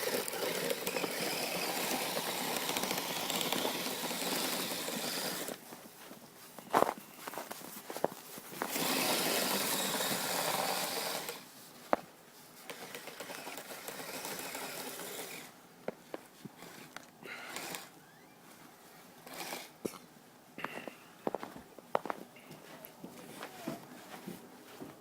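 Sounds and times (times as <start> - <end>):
toy vehicle electric motor running: 0.0 - 5.6, 8.7 - 11.5, 12.7 - 15.5, 16.6 - 18.2, 19.2 - 19.7.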